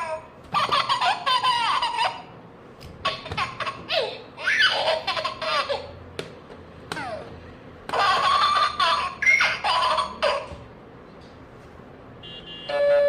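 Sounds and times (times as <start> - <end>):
baby laughing: 0.0 - 6.0, 6.9 - 10.7.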